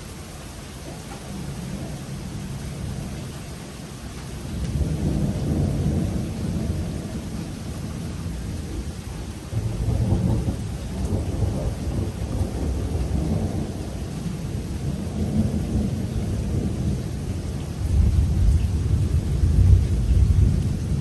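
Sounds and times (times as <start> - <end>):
steady rain: 0.0 - 21.0
rolling thunder: 4.5 - 21.0.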